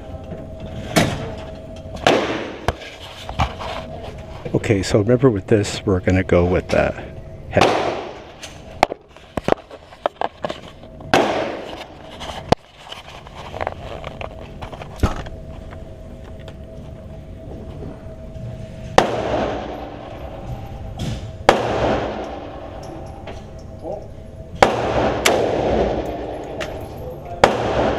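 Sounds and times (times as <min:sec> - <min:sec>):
gunshots with echo: 0:02.0 - 0:02.7, 0:07.6 - 0:08.3, 0:11.1 - 0:11.7, 0:18.9 - 0:20.4, 0:21.1 - 0:23.0, 0:24.6 - 0:26.8, 0:27.4 - 0:27.9.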